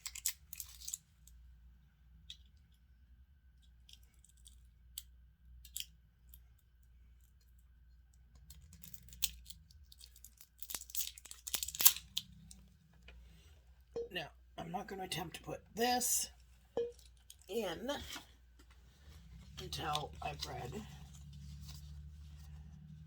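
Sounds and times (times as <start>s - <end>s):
plastic clicks and crinkling rustles: 0.0s - 1.4s, 7.2s - 13.2s.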